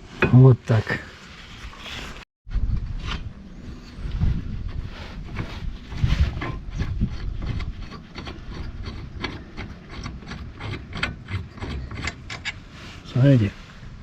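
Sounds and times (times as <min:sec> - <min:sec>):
metal rubbing: 0:03.6 - 0:13.6.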